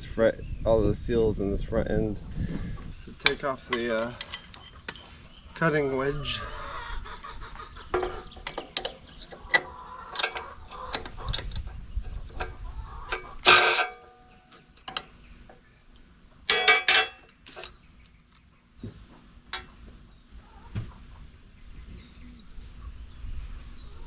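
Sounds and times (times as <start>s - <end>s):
loud ringing metal clank: 13.2s - 14.5s, 16.5s - 17.3s.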